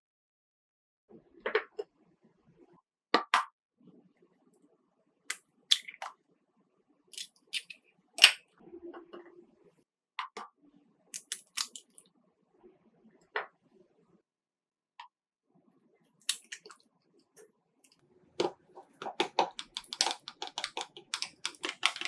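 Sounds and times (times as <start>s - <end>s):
kitchen utensils clicking: 19.2s - 22.0s.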